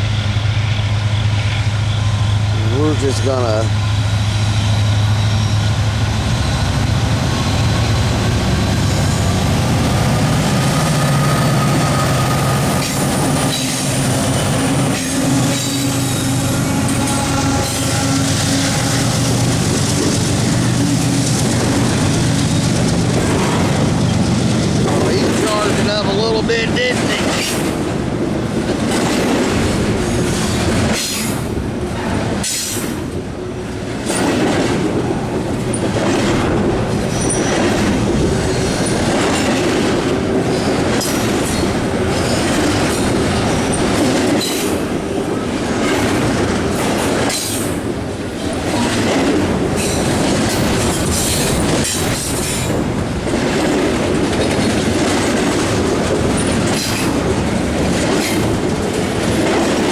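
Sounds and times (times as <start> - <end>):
steel wheels clattering on rail: 1.1 - 59.9
sharp rail clacks: 11.7 - 28.0, 33.9 - 59.9
wheel squeal: 37.1 - 37.9.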